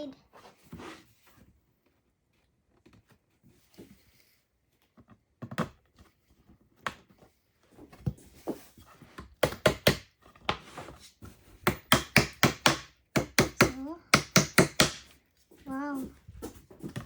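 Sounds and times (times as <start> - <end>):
hammer tapping plastic fittings: 11.7 - 15.1.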